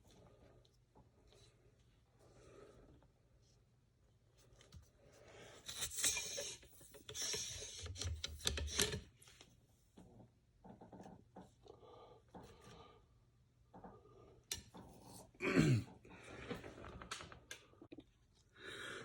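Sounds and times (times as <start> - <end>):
cleaning rod scraping in gun barrel: 5.7 - 8.9.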